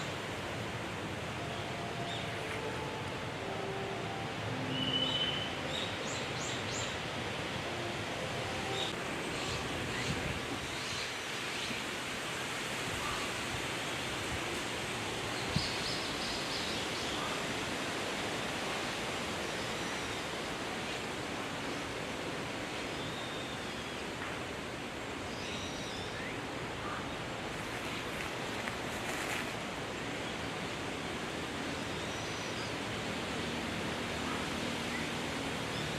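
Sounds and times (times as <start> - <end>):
steady background hiss: 0.0 - 35.9.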